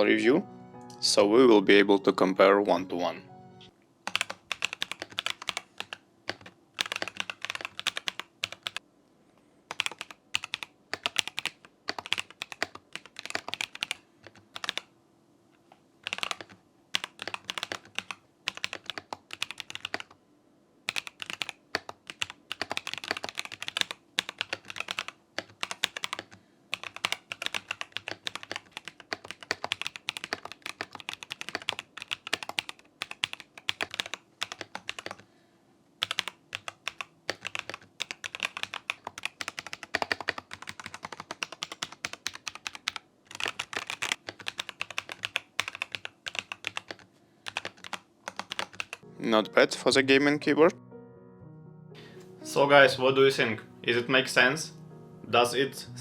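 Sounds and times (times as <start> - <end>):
mechanical keyboard key clacks: 4.1 - 8.8.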